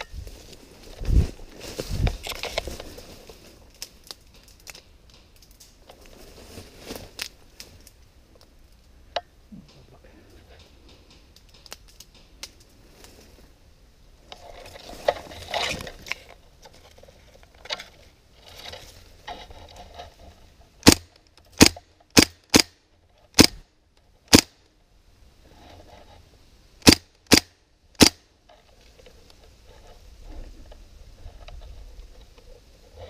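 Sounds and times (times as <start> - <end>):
airsoft gun shots: 24.3 - 24.5, 26.8 - 28.2.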